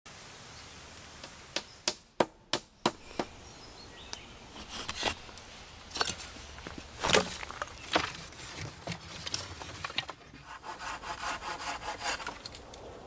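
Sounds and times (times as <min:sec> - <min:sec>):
outdoor hiss: 0:00.1 - 0:07.0.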